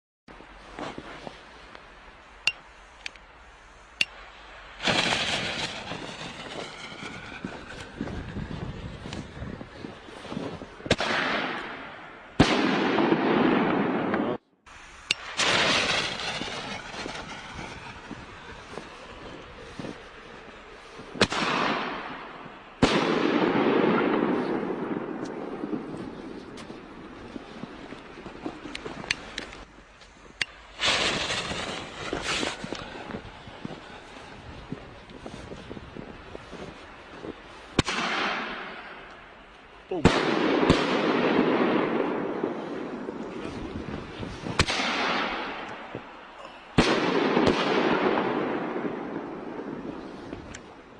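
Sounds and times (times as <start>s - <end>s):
firework crackling: 0.4s - 50.9s
firework hissing rush: 4.7s - 9.7s, 14.7s - 22.4s, 30.6s - 37.0s.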